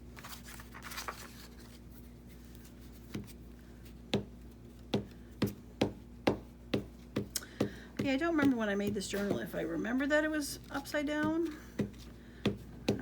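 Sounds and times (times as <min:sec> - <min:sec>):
paper rustling: 0:00.0 - 0:04.9.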